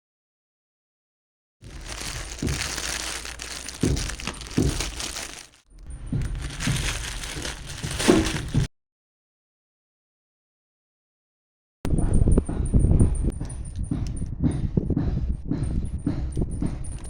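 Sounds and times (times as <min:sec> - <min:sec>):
packaging crinkling and rustling: 0:01.6 - 0:08.7
soft knocks: 0:01.7 - 0:05.5.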